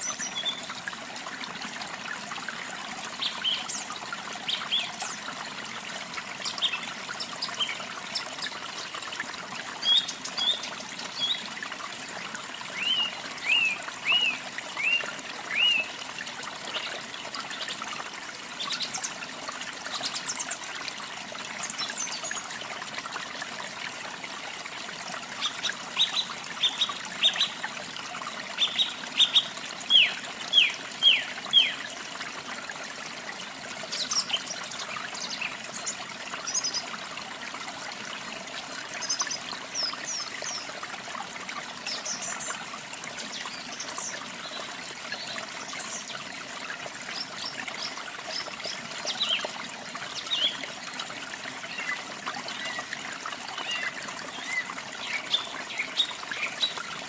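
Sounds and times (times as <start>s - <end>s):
water trickling: 0.0s - 57.0s.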